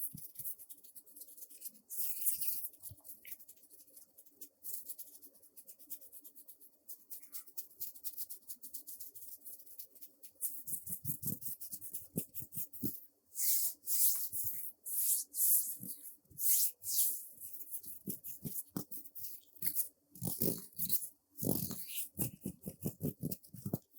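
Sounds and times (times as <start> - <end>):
brush strokes on a surface: 0.0 - 23.9.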